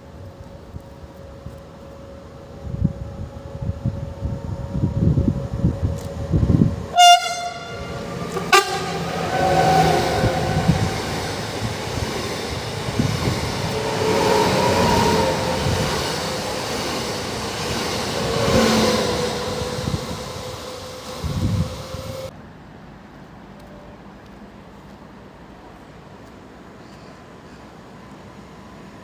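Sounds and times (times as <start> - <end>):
train running noise: 0.0 - 29.0
train horn toots: 6.9 - 11.0, 13.7 - 16.0, 18.2 - 22.3.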